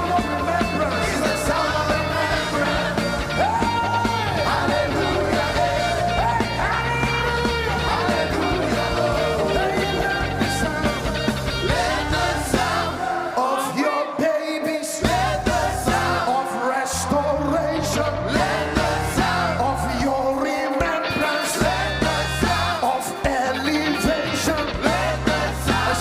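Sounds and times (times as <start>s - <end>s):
bass and drums: 0.0s - 13.1s, 15.0s - 16.4s, 17.0s - 20.4s, 21.5s - 26.0s
worship music with singing: 0.0s - 26.0s.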